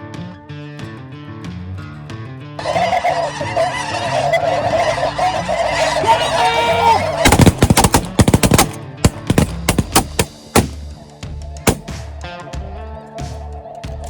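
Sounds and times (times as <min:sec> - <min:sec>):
geese calling: 0:02.6 - 0:10.8
shotgun fire: 0:07.2 - 0:10.9, 0:11.7 - 0:12.0.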